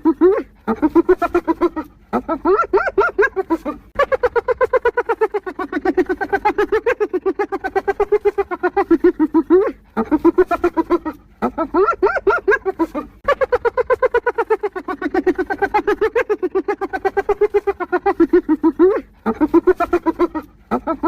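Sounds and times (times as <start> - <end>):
hyena giggling: 0.0 - 21.0.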